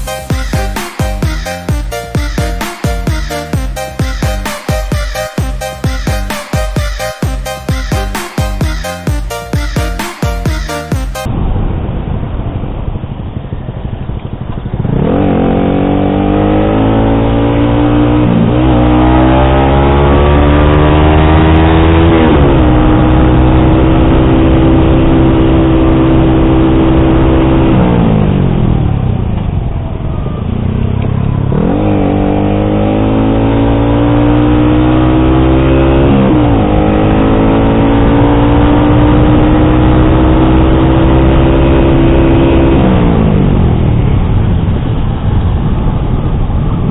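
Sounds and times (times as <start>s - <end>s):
motorcycle engine accelerating: 11.2s - 46.9s.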